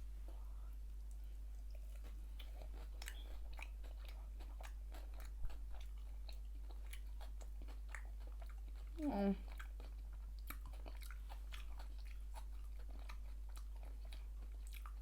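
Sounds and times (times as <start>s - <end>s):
chewing crunchy food: 1.0s - 15.0s.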